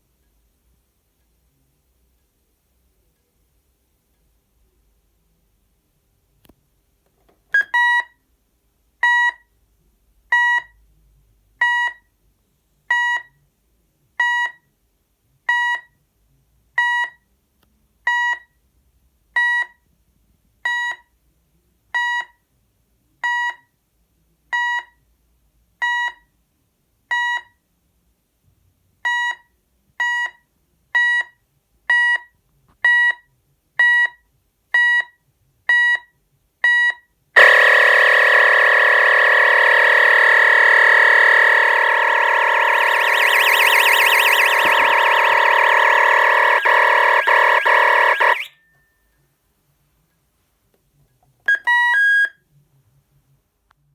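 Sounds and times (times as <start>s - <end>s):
alarm panel short electronic beeps: 37.4s - 48.5s.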